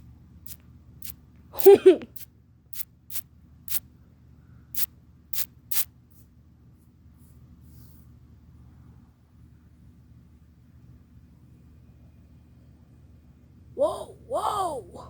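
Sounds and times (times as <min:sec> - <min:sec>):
low steady hum: 0:00.0 - 0:15.0
faint brief hiss: 0:04.8 - 0:06.3.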